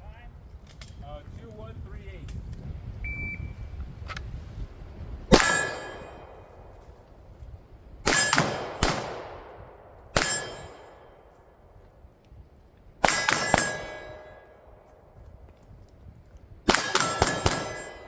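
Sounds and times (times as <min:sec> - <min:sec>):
pistol shots: 0:05.3 - 0:06.4, 0:08.1 - 0:11.3, 0:13.0 - 0:14.6, 0:16.7 - 0:18.0
metallic ping on steel: 0:05.3 - 0:06.5, 0:10.2 - 0:11.2, 0:13.1 - 0:14.6.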